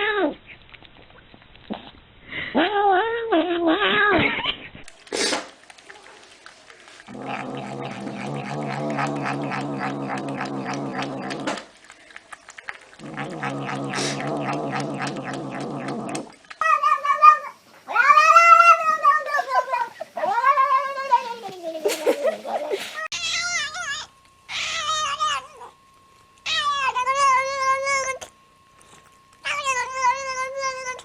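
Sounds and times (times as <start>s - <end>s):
cats meowing and yowling: 13.5s - 21.8s, 22.7s - 25.8s, 26.5s - 28.2s, 29.5s - 31.0s.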